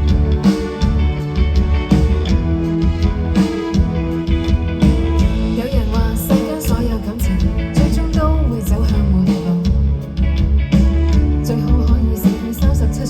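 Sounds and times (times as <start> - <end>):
live band playing: 0.0 - 13.0
person singing: 5.5 - 9.8, 11.3 - 13.0.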